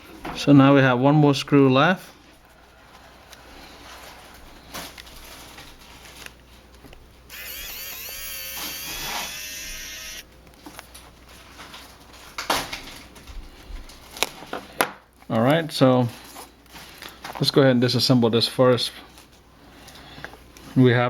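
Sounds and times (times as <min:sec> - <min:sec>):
electric screwdriver motor whining: 0:07.3 - 0:10.2.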